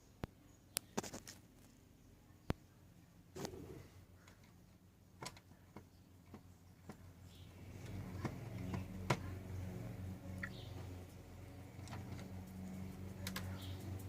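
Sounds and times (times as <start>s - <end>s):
washing machine motor hum: 6.8s - 14.0s.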